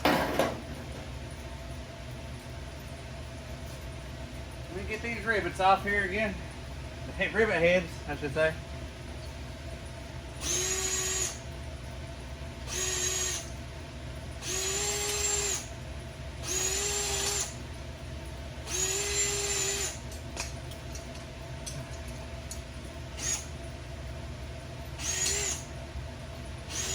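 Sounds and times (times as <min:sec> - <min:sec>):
power drill drilling: 0:10.4 - 0:11.4, 0:12.7 - 0:13.5, 0:14.4 - 0:15.7, 0:16.4 - 0:17.6, 0:18.7 - 0:20.0, 0:23.2 - 0:23.5, 0:25.0 - 0:25.7, 0:26.7 - 0:26.9.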